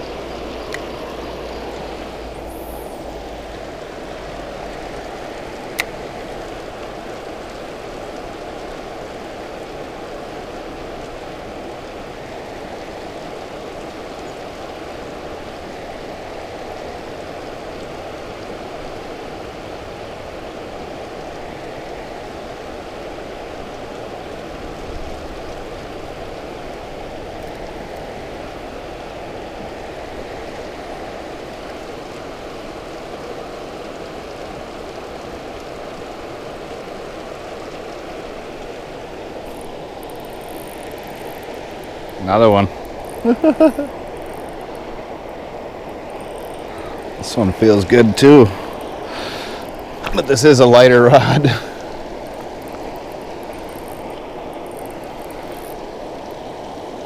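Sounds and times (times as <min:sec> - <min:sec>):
water rushing through spillway: 0:00.0 - 0:57.0.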